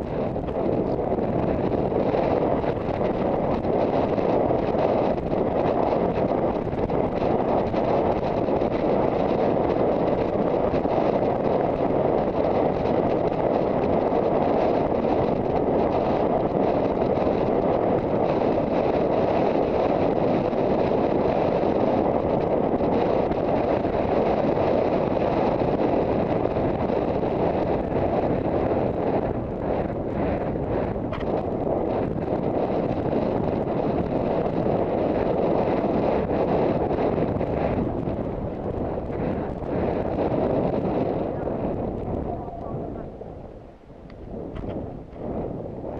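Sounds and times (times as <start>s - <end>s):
wind buffeting microphone: 0.0s - 45.9s.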